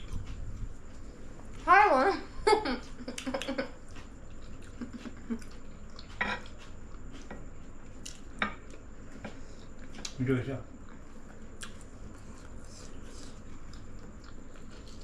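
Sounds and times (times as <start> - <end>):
cutlery clinking on plates: 6.2 - 6.5.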